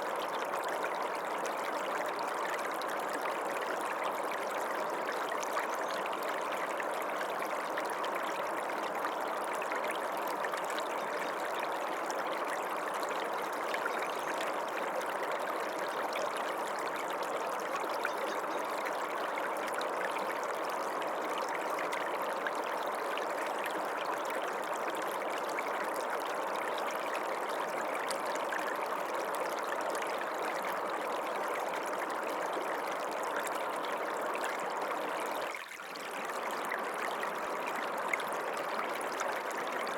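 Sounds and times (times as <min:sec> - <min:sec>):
stream water running: 0:00.0 - 0:39.9.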